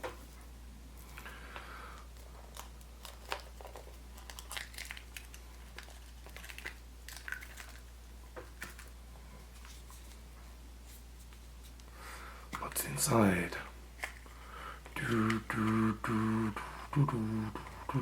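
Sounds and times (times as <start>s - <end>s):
steady low hum: 0.0s - 18.0s
foil wrapper crinkling: 2.0s - 9.0s.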